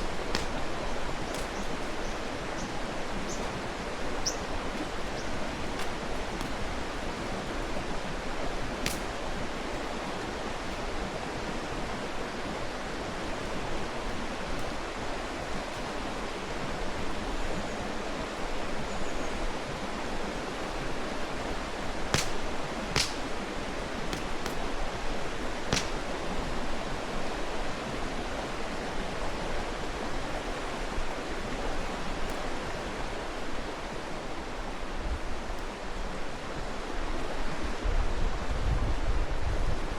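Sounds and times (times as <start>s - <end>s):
campfire pops: 0.0s - 8.0s, 8.7s - 11.0s, 22.0s - 26.6s
stream rushing: 0.0s - 39.1s.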